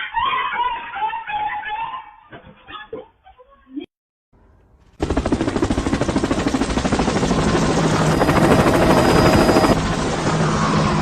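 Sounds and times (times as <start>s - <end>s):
machine running with fast pulsing: 5.0s - 11.0s.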